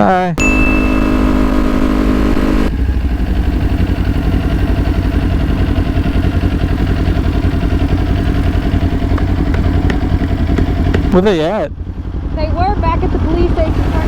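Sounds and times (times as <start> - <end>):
steady held tone: 0.4 - 11.3
motorcycle engine idling: 0.4 - 14.0.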